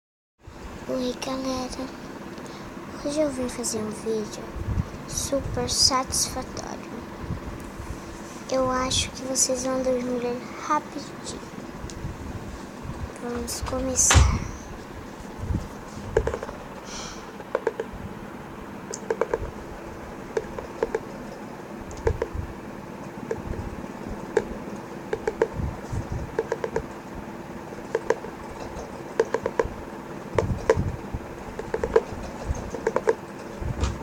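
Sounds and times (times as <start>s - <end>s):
tapping clicks on hard object: 17.5s - 17.9s, 25.1s - 25.5s, 29.2s - 29.7s.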